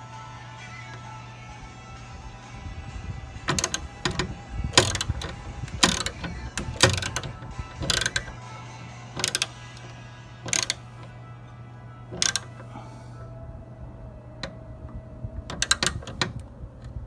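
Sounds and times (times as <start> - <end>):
ratchet wrench clicking: 3.5 - 8.5, 9.1 - 9.9, 10.5 - 11.1, 12.2 - 12.6, 15.5 - 16.3.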